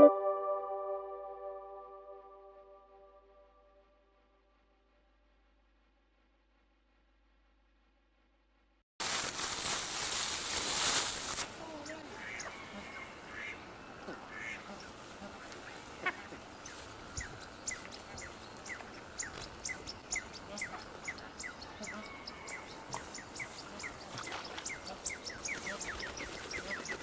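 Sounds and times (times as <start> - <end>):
birds chirping: 11.6 - 27.0.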